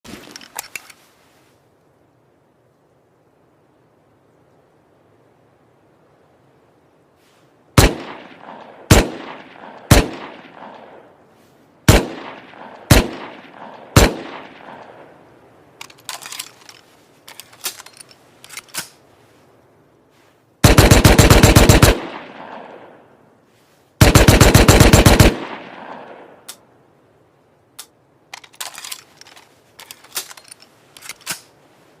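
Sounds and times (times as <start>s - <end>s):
gun clicks: 0.2s - 1.0s, 11.9s - 19.1s, 27.7s - 31.6s
submachine gun shots: 7.8s - 10.9s, 11.9s - 14.9s, 20.6s - 22.8s, 24.0s - 26.2s.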